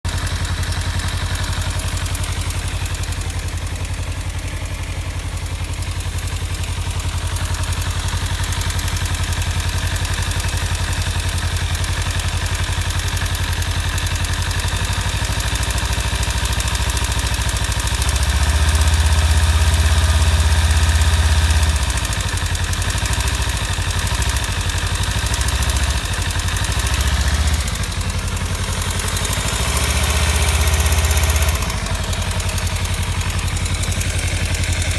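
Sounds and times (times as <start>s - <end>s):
motorcycle engine idling: 0.0s - 34.9s
ticking rattle: 0.1s - 34.9s.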